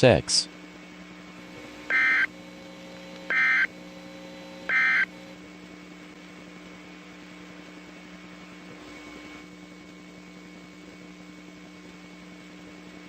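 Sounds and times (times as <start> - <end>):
receiver hum: 0.0 - 13.0
screeching digital data tones: 1.9 - 2.3, 3.3 - 3.7, 4.7 - 5.1.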